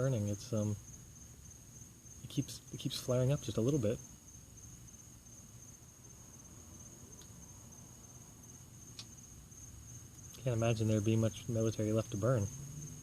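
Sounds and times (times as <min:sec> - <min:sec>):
cricket trilling: 0:00.0 - 0:13.0
faint ticks: 0:08.9 - 0:09.2.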